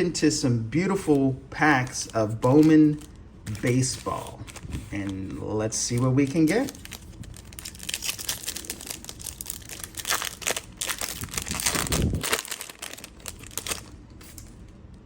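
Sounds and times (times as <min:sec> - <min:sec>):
foil wrapper tearing and crinkling: 0:05.9 - 0:14.5.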